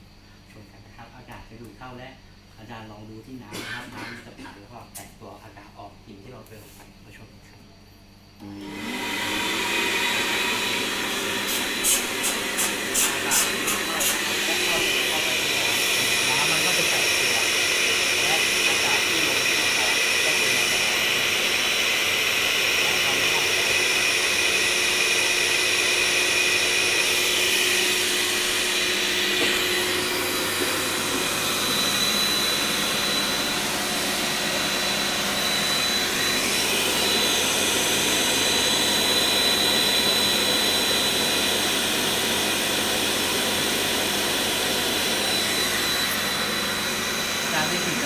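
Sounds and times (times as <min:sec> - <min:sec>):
vacuum cleaner motor whine: 0:08.2 - 0:48.0.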